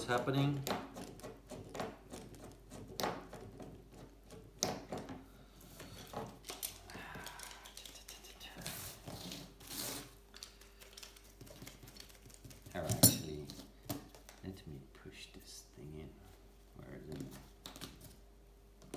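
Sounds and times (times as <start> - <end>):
small parts and tools clicking: 6.4 - 8.6, 10.3 - 13.2.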